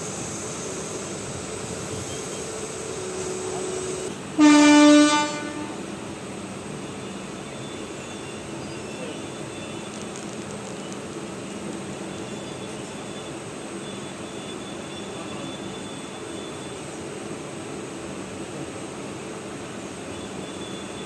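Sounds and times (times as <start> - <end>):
train rumbling along tracks: 0.0 - 21.0
train horn blast: 3.1 - 5.9.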